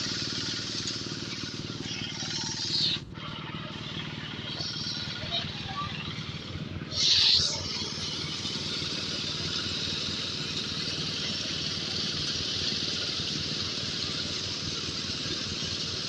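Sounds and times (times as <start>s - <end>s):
corn sheller hissing: 0.0s - 16.0s
engine humming: 0.0s - 16.0s.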